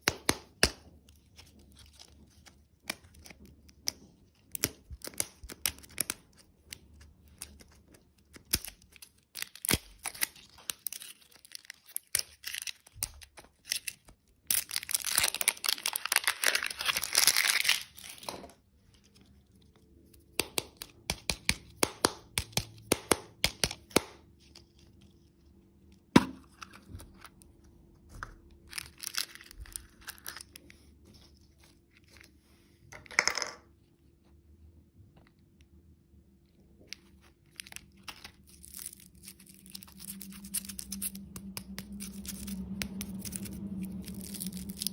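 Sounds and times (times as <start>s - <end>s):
candy packaging crinkling: 0.1s - 32.3s, 36.8s - 44.9s
packaging tearing: 7.4s - 18.4s, 28.6s - 30.6s, 37.4s - 44.9s.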